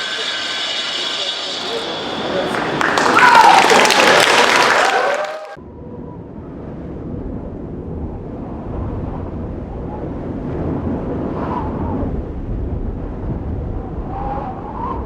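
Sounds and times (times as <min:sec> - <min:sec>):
crowd voices: 0:00.0 - 0:05.6
audience clapping: 0:01.6 - 0:05.6.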